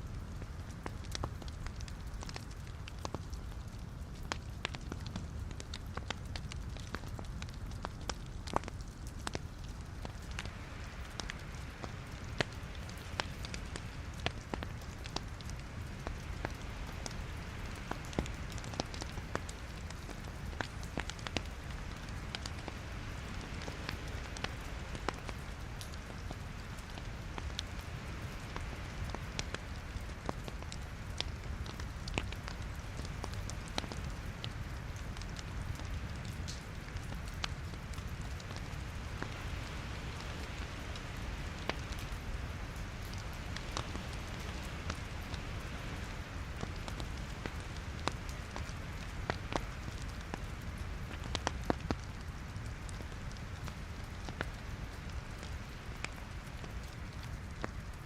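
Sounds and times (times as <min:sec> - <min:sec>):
logs crackling and popping: 0:00.0 - 0:58.0
low rumble of flames: 0:00.0 - 0:58.0.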